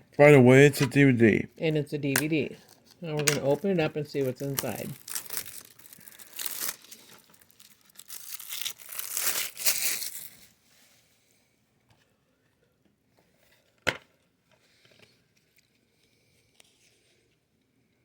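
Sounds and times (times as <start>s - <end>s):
plastic wrap tearing and crinkling: 2.6s - 10.5s.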